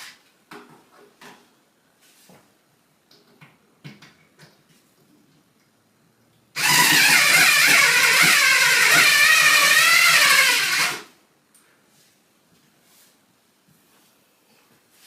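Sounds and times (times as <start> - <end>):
electric drill whining: 6.6 - 11.1.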